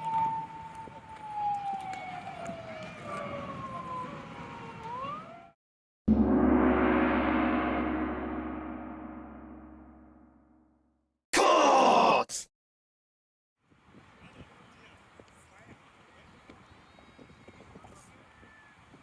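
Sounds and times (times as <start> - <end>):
downward gliding tones: 6.1 - 10.4
loud struck crash: 6.1 - 10.6.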